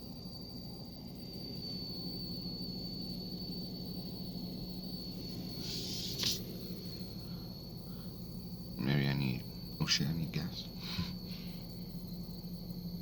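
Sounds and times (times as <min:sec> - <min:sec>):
high-pitched thin whine: 0:00.0 - 0:13.0
brief hiss: 0:05.6 - 0:06.5.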